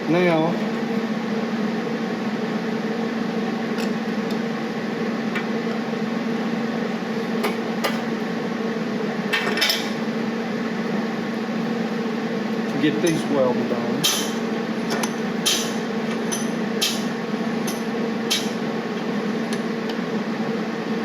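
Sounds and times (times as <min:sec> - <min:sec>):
steady low hum: 0:00.0 - 0:21.0
metal tools clinking: 0:14.0 - 0:18.6.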